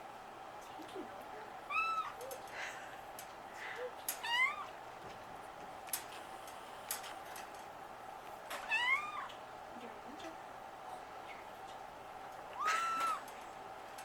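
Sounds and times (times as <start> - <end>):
cat meowing: 1.7 - 2.2, 4.2 - 4.8, 8.7 - 9.4, 12.6 - 13.3.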